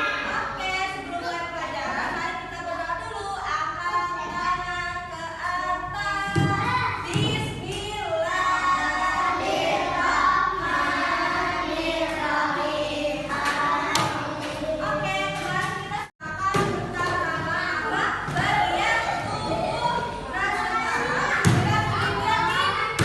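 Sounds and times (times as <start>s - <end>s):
group of voices singing: 8.4s - 14.8s.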